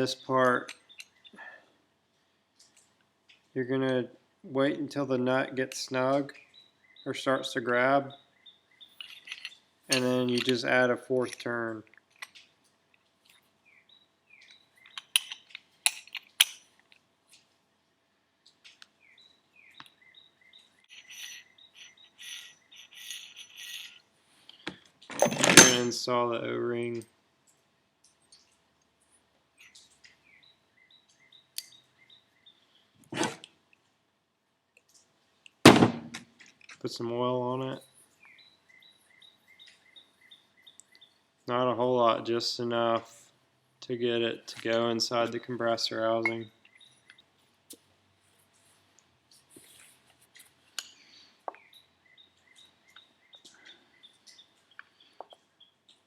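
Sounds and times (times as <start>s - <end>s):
light clicks of small parts: 2.1s - 3.6s, 9.0s - 13.5s, 18.4s - 19.0s
small metal parts clinking: 8.9s - 12.4s, 14.8s - 17.0s, 20.9s - 25.9s
faint chirps: 19.0s - 24.6s.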